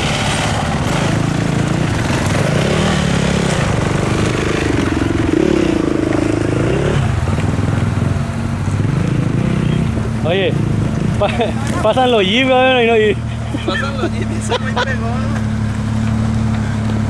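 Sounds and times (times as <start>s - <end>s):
engine revving: 0.0s - 17.0s
off-road vehicle engines running: 0.0s - 17.0s.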